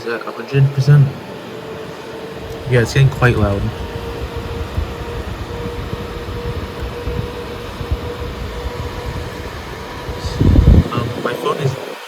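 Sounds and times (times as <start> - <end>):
cooling fans rushing air: 0.0 - 12.0
wind noise on microphone: 0.7 - 12.0.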